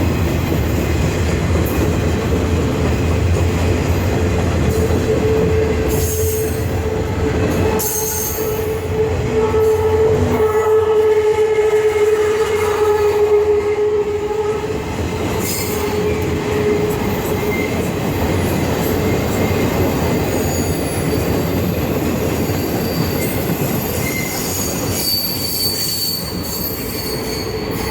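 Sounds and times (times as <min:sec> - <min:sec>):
freight train wheels clattering: 0:00.0 - 0:13.8, 0:14.6 - 0:27.9
high wheel squeal: 0:04.8 - 0:10.6, 0:20.3 - 0:27.9.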